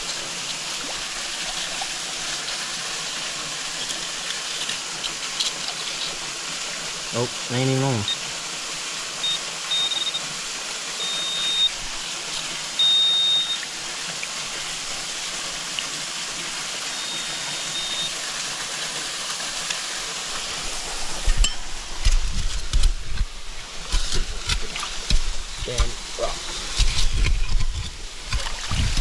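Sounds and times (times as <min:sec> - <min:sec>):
creek water flowing: 0:00.0 - 0:29.0
metal detector beeps: 0:09.2 - 0:10.3, 0:11.0 - 0:11.8, 0:12.8 - 0:13.6, 0:16.9 - 0:18.1
digging among rocks: 0:20.7 - 0:29.0.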